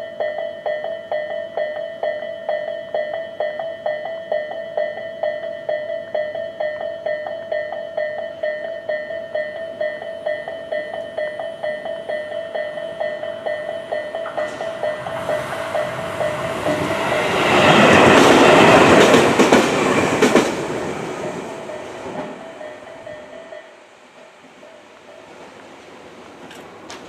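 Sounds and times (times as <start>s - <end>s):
railway crossing alarm ringing: 0.0s - 25.6s
train wheel rumble: 7.5s - 23.6s.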